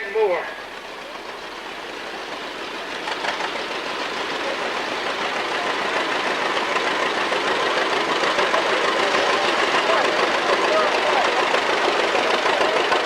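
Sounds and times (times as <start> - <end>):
tractor engine running: 0.0 - 13.0.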